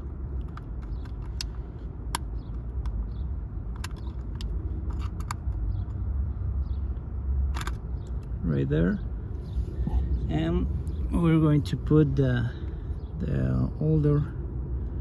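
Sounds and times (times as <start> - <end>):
steady low rumble: 0.0 - 15.0
small parts clicking and tapping: 0.3 - 6.0, 7.5 - 8.3.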